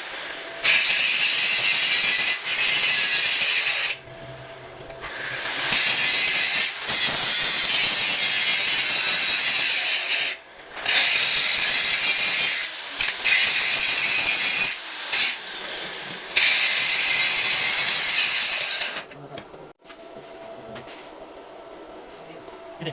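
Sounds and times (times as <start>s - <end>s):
angle grinder grinding steel: 0.0s - 4.0s, 5.0s - 19.1s.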